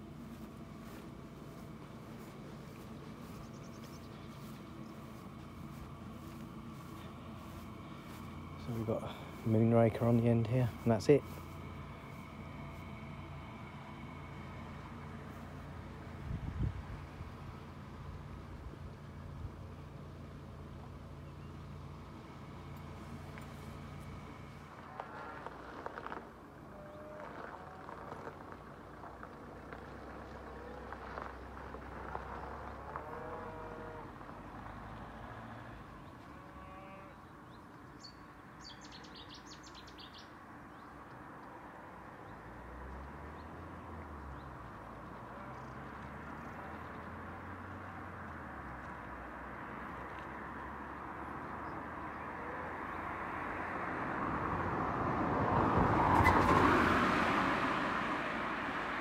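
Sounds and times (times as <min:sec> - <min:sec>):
birds chirping: 0:00.0 - 0:15.1, 0:36.0 - 0:41.1
vehicle passing close: 0:00.0 - 0:18.8, 0:22.3 - 0:37.2, 0:42.4 - 0:59.0
outdoor background noise: 0:00.0 - 0:59.0.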